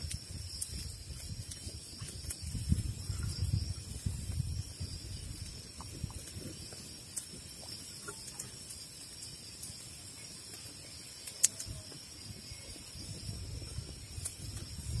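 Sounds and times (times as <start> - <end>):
sharp clicks: 11.2 - 11.8.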